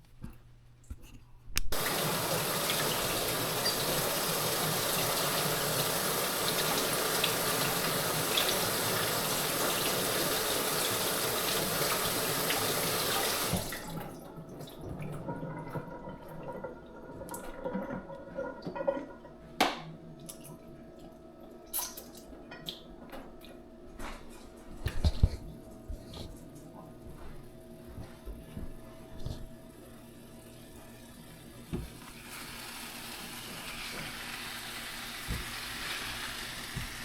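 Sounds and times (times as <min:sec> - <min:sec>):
tap water running into sink: 0:01.7 - 0:19.8, 0:30.7 - 0:37.0.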